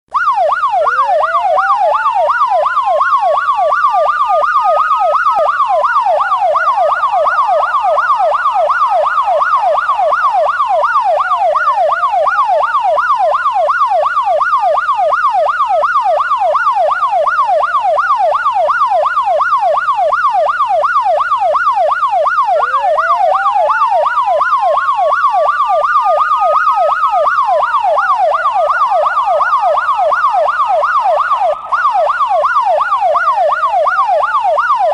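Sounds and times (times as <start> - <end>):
electronic siren yelp and wail: 0.1 - 34.9.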